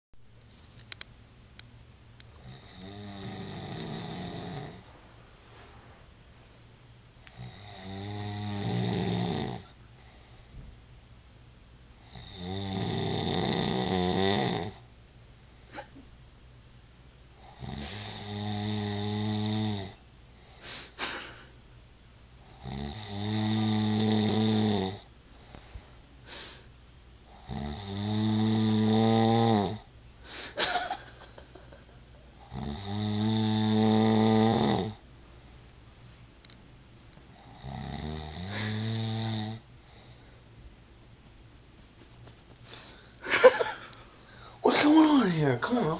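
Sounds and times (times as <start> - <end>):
man snoring: 2.4 - 4.9, 7.3 - 9.8, 12.0 - 14.9, 17.4 - 20.0, 22.4 - 25.1, 27.3 - 29.9, 32.4 - 35.0, 37.3 - 39.7.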